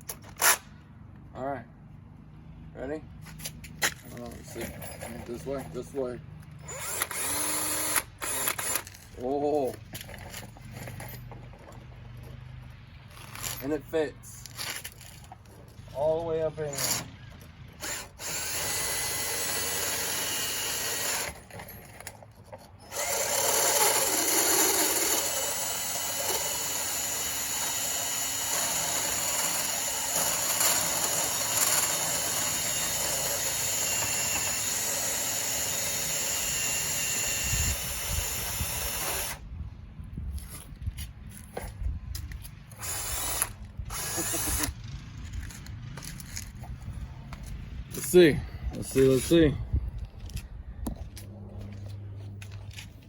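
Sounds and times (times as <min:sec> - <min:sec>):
drill grinding rust off metal: 0:06.6 - 0:09.3, 0:16.0 - 0:17.2, 0:17.8 - 0:22.1, 0:22.8 - 0:39.4, 0:42.7 - 0:44.8.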